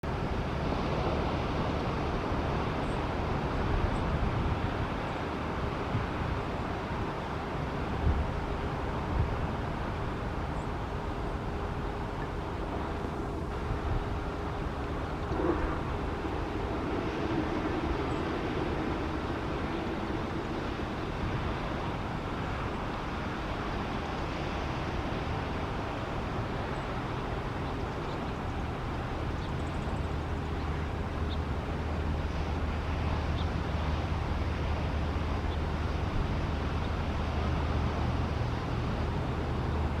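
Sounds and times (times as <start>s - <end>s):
low hum: 11.3s - 22.7s.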